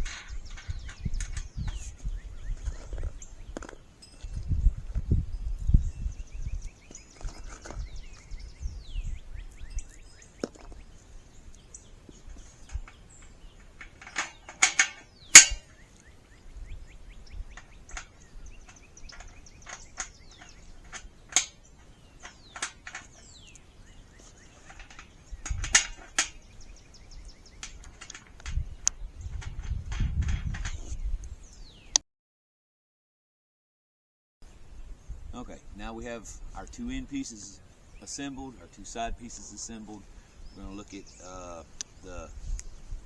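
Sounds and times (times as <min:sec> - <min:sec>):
steel panels clanking and rattling: 0:00.0 - 0:01.8, 0:12.1 - 0:15.8, 0:17.5 - 0:23.6, 0:24.5 - 0:26.4, 0:27.6 - 0:30.8
birds chirping faintly: 0:00.0 - 0:32.0, 0:34.4 - 0:43.0
sharp metal knocks: 0:13.8 - 0:15.8.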